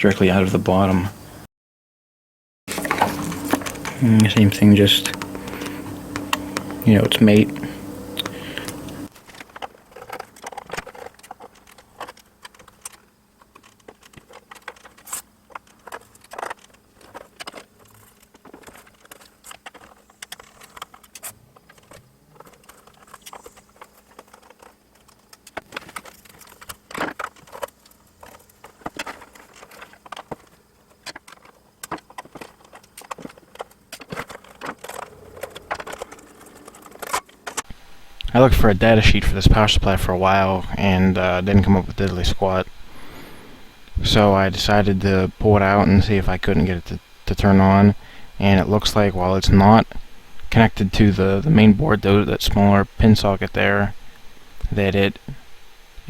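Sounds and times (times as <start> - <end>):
faint steady hum: 0.0 - 1.5, 2.7 - 56.0
tools clicking and clattering: 2.7 - 37.6.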